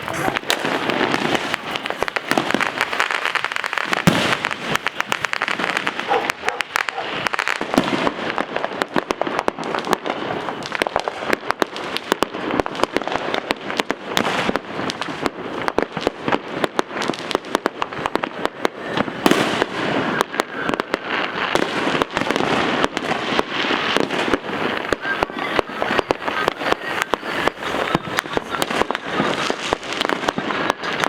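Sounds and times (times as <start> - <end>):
fireworks crackling and popping: 0.0 - 31.0.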